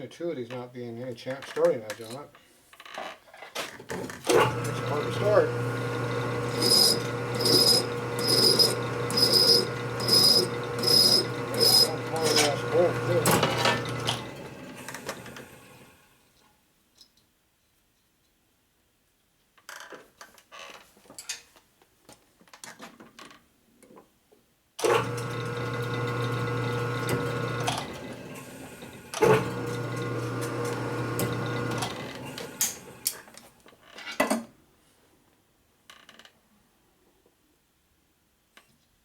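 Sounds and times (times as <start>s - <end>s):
electric power tool humming: 4.3s - 16.0s, 24.9s - 33.2s.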